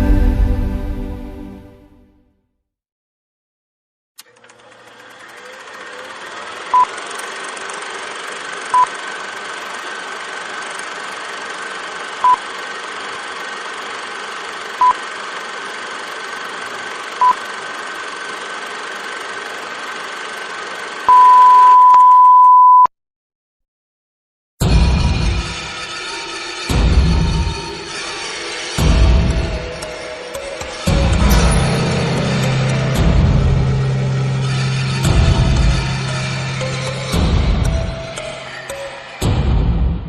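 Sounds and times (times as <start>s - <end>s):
electronic beeps: 21.1s - 22.9s
long electronic beep: 21.1s - 22.9s.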